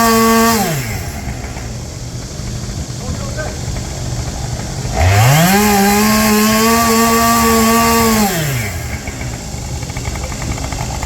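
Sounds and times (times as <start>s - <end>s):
chainsaw revving and idling: 0.0s - 11.0s.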